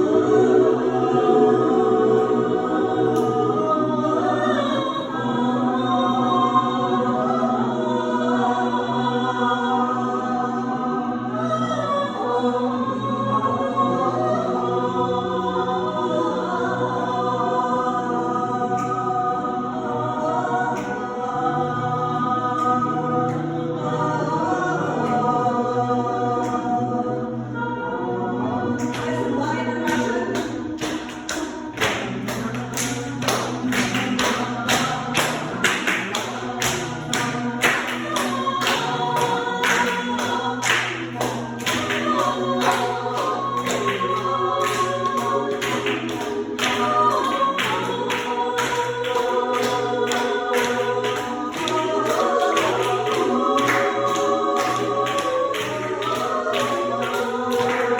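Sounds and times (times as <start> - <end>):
choir singing: 0.0 - 57.9
rhythmic sharp beats: 28.7 - 57.9.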